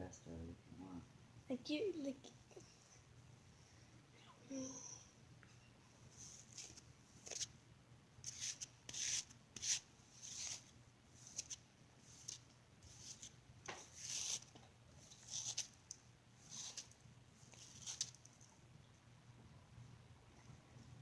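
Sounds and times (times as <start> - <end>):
hairbrush brushing through hair: 8.2 - 11.5.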